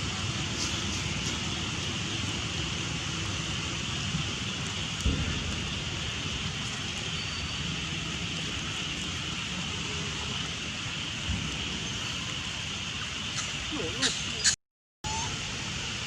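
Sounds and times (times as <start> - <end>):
outdoor background hiss: 0.0 - 16.0
low rumble: 3.3 - 10.3.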